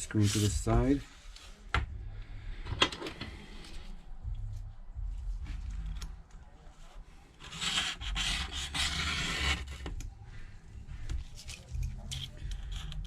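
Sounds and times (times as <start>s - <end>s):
tool scraping along frame: 7.4s - 9.8s.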